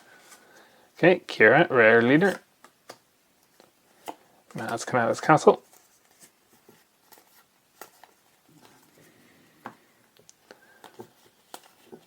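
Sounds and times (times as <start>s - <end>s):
soft rustle of cards: 2.0s - 12.0s.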